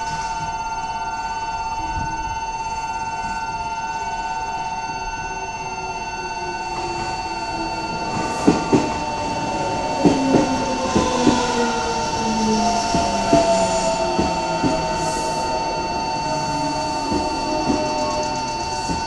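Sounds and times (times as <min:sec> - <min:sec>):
level crossing alarm: 0:00.0 - 0:19.0
train whine: 0:00.0 - 0:19.0
train wheels knocking on rail joints: 0:06.5 - 0:19.0.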